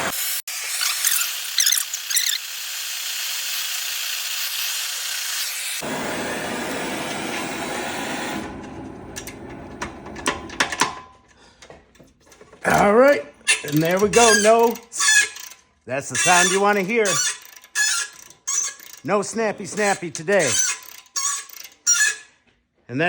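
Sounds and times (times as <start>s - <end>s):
torch flame hissing: 5.8s - 10.4s.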